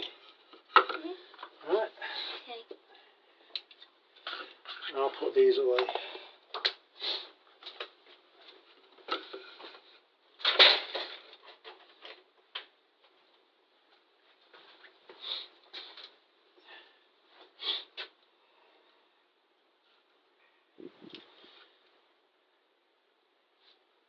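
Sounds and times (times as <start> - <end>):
small items handled by hand: 0.0 - 2.8, 3.4 - 16.6.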